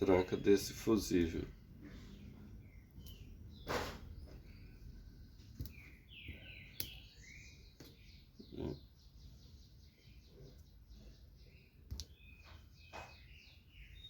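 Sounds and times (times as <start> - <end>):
faint bird chirps: 0.0 - 14.0
bird trill: 5.7 - 14.0.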